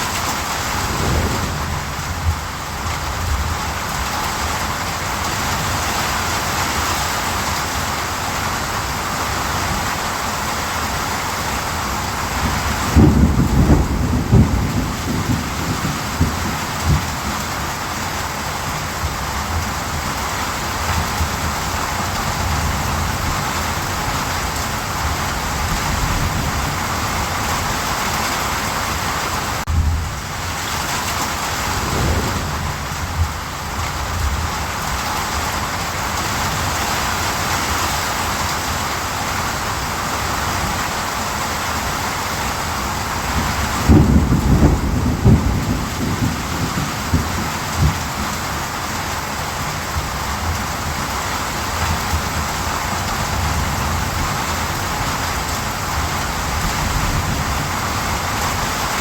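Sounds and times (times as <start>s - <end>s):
steady rain falling: 0.0s - 30.6s, 31.2s - 59.0s
thunder rumbling: 0.4s - 4.1s, 31.3s - 34.9s.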